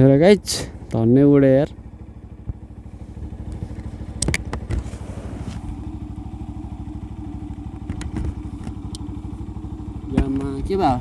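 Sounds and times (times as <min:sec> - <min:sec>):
motorcycle engine at low revs: 0:00.0 - 0:11.0
sharp knocks and rattles: 0:03.4 - 0:05.0, 0:07.4 - 0:09.0.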